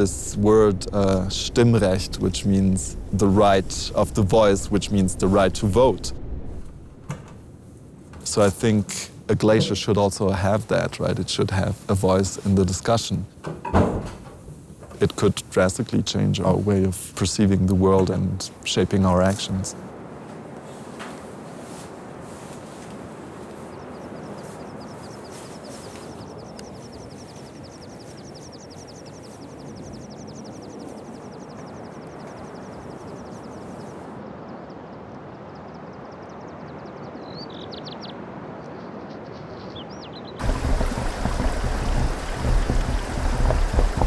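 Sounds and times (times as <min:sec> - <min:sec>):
meltwater rushing: 0:00.0 - 0:06.5, 0:40.4 - 0:44.0.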